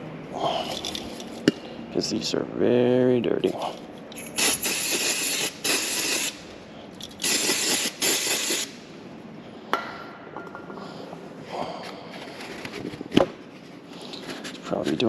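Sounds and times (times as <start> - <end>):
aerosol spray hissing: 4.2 - 6.4, 7.2 - 8.8.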